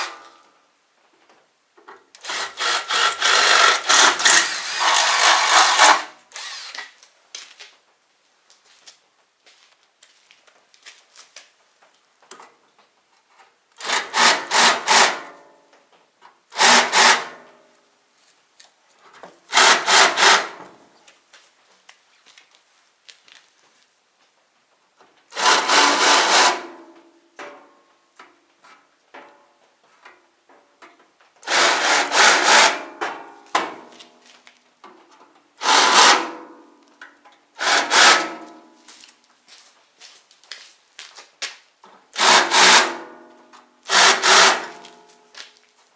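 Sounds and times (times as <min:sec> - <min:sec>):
tool cutting a workpiece: 0:02.2 - 0:07.0, 0:13.8 - 0:15.4, 0:16.6 - 0:17.5, 0:19.5 - 0:20.6, 0:25.3 - 0:26.8, 0:31.4 - 0:33.0, 0:35.6 - 0:36.5, 0:37.6 - 0:38.6, 0:42.2 - 0:43.2, 0:43.9 - 0:45.0.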